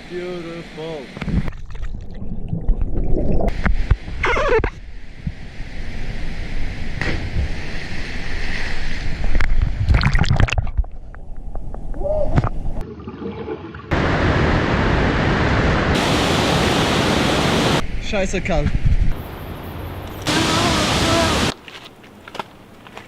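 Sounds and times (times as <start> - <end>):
water splashing and gurgling: 1.2 - 4.5, 7.5 - 11.1, 12.4 - 17.8
rush of water: 12.8 - 17.8, 19.8 - 21.6.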